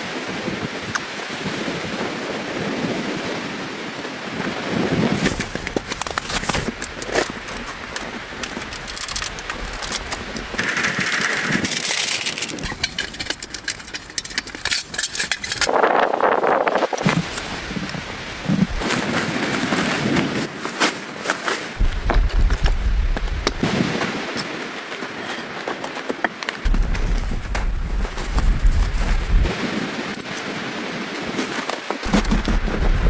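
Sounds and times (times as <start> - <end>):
strong gusty wind: 0.0 - 20.6, 21.7 - 24.9, 26.6 - 33.0
sharp crackles and clicks: 5.2 - 19.2, 21.8 - 23.7, 26.5 - 30.4, 31.4 - 33.0.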